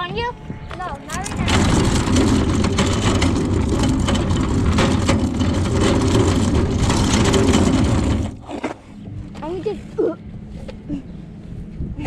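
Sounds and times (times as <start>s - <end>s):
rumbling and rattling noise: 0.7s - 9.8s.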